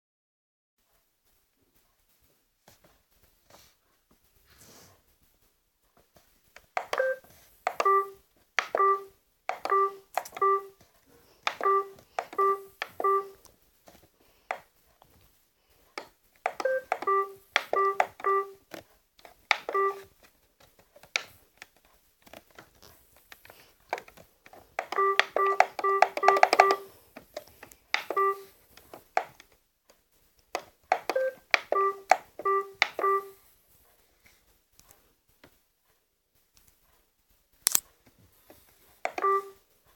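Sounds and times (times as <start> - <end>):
short electronic beeps: 7.0 - 7.2, 7.8 - 8.2, 8.8 - 9.1, 9.7 - 10.7, 11.6 - 13.4, 16.6 - 18.6, 19.7 - 20.0, 24.9 - 26.9, 28.1 - 28.5, 31.1 - 33.4, 39.2 - 39.6
button clicks: 24.8 - 26.9.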